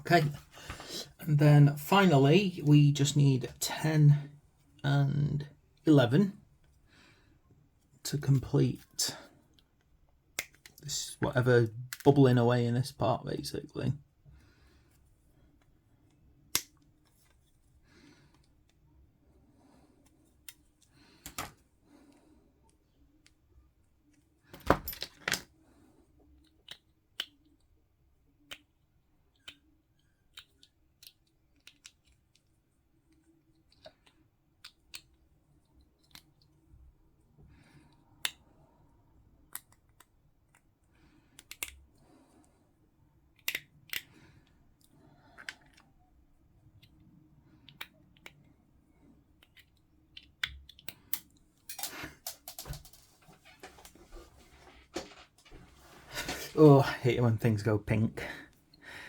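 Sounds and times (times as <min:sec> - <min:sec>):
plastic parts clicking and tapping: 0:49.3 - 0:53.9.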